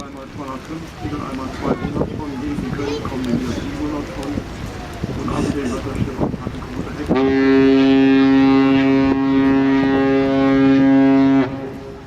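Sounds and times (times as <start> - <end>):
ship's horn blast: 7.0 - 12.0.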